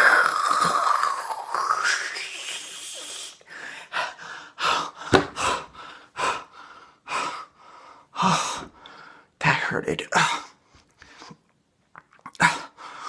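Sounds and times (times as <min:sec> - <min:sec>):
man gasping and panting: 0:03.4 - 0:09.3.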